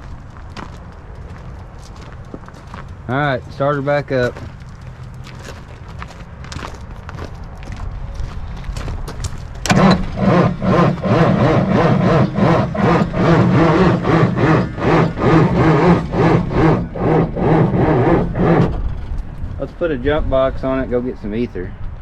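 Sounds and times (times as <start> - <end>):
diesel engine cranking on starter: 9.6 - 19.4.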